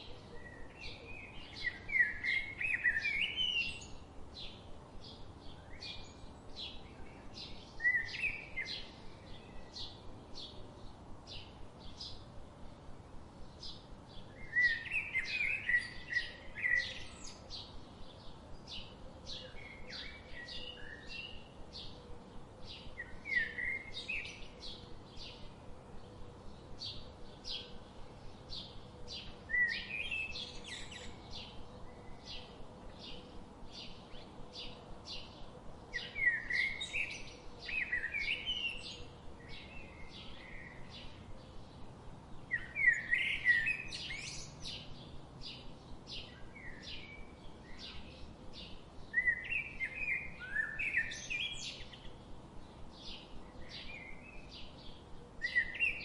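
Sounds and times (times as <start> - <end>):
bird warbling song: 0.0 - 12.3, 13.5 - 22.0, 22.6 - 56.0.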